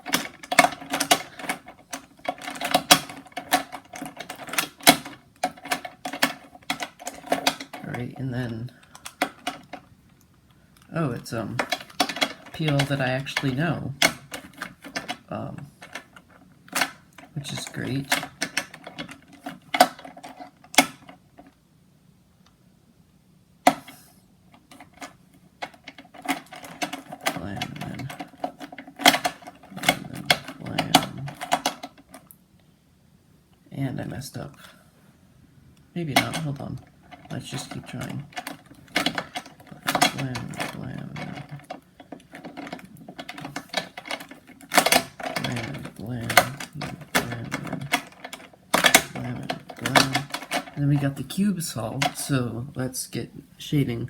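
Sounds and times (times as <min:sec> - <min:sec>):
plastic puzzle cube clacking: 0:00.0 - 0:08.2, 0:08.8 - 0:09.9, 0:10.8 - 0:21.5, 0:24.7 - 0:32.3, 0:36.1 - 0:51.4
puzzle cube clicking: 0:11.4 - 0:21.1.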